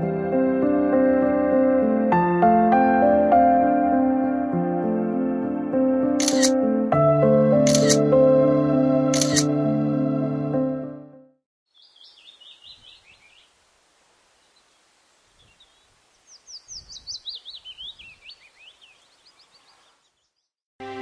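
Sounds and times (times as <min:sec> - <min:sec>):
songbird singing: 0:11.7 - 0:20.6
faint steady hiss: 0:12.3 - 0:16.8.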